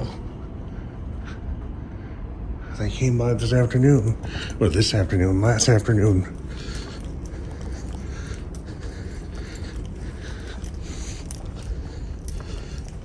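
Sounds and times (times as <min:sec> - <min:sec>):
soft footsteps: 0:06.3 - 0:13.0.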